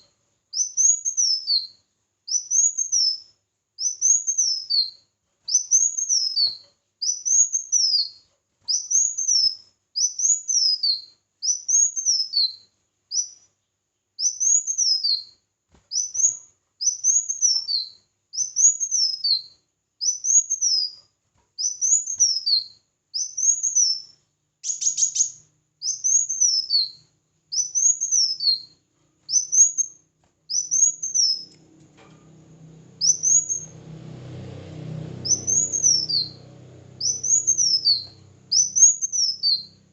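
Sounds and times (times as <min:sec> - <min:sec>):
songbird calling: 0:21.6 - 0:28.7, 0:29.3 - 0:31.6, 0:33.0 - 0:33.7, 0:35.2 - 0:39.9
low rumbling background: 0:31.4 - 0:39.9.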